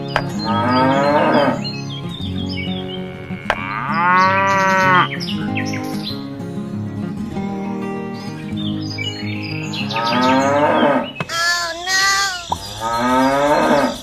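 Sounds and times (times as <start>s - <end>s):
background music: 0.0s - 12.1s
cow mooing: 0.5s - 1.6s, 3.0s - 6.0s, 9.8s - 11.1s, 12.7s - 14.0s.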